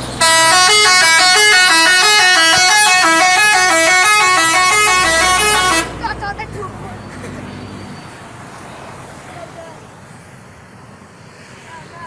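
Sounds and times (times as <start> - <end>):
musical air horn tune: 0.1 - 6.0.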